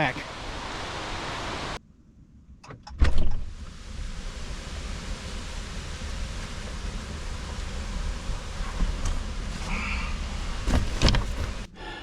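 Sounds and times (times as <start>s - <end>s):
car interior engine rumble: 5.9s - 11.7s.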